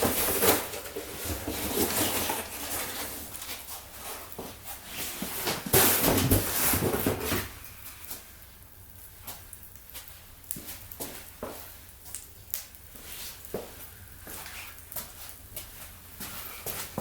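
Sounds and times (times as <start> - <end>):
knocks and clatters of handling: 0.0 - 3.7, 4.4 - 7.6.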